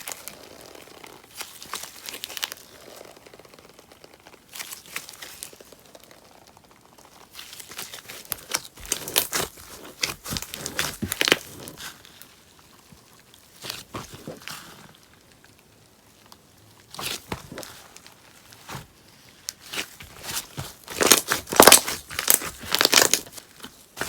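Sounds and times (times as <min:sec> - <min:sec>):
slime crackling and snapping: 0:07.2 - 0:12.2, 0:16.2 - 0:24.0.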